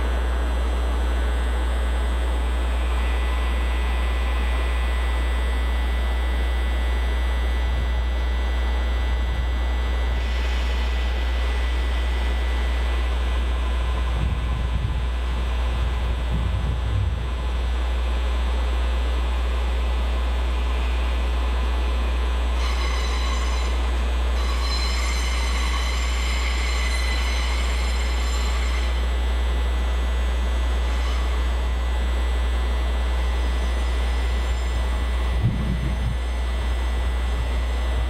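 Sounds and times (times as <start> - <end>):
train deep rumble: 0.0 - 38.0
high metallic wheel squeal: 22.6 - 29.1, 30.8 - 31.5, 33.3 - 35.0.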